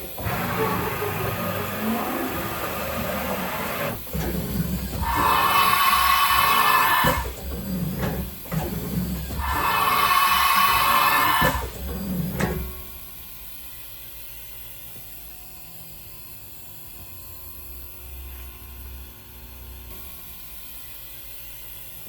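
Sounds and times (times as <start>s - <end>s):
machine whine: 0.0s - 13.4s.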